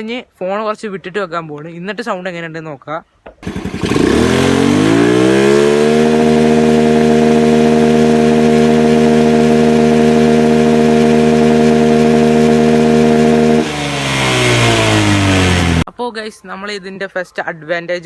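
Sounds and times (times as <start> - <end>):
scooter engine revving: 3.4 - 15.9.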